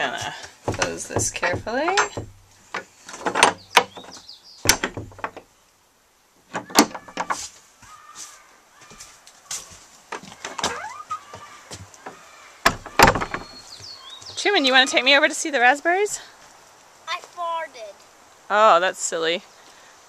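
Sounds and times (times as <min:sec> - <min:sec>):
wooden door knocks: 0:00.7 - 0:02.5, 0:03.2 - 0:05.4, 0:10.1 - 0:13.6
faint rustling: 0:06.4 - 0:18.3.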